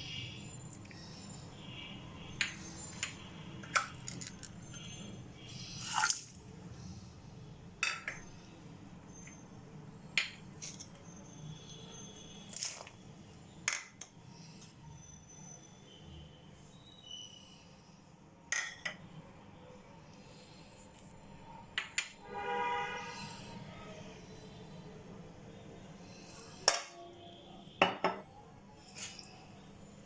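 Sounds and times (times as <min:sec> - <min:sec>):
dishes and utensils clinking: 0:07.8 - 0:08.4, 0:27.8 - 0:28.3.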